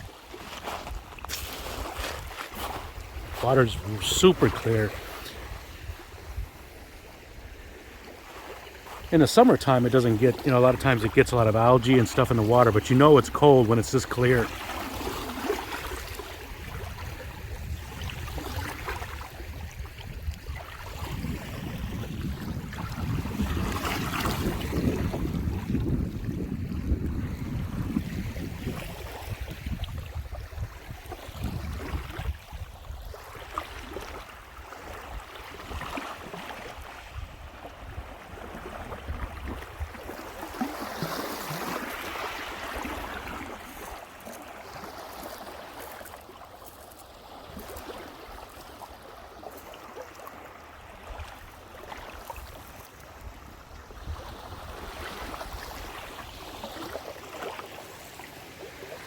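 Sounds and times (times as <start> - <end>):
wind rumbling on microphone: 0.0 - 7.9, 16.0 - 34.1, 36.8 - 40.4
small waves lapping: 0.0 - 59.0.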